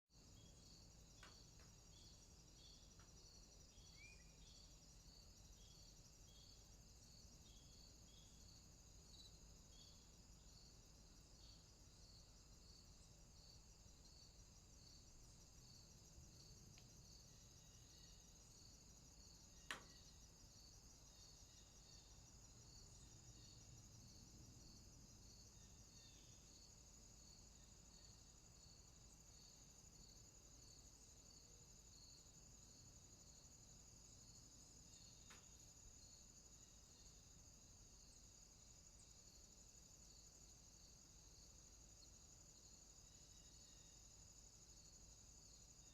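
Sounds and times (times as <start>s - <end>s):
insects chirring: 0.2s - 45.9s.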